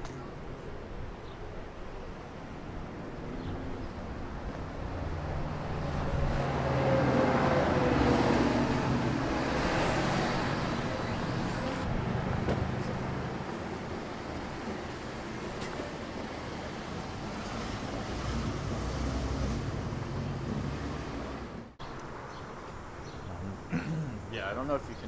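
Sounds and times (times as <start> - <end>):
street traffic: 0.0 - 25.0
vehicle driving past: 17.6 - 21.7.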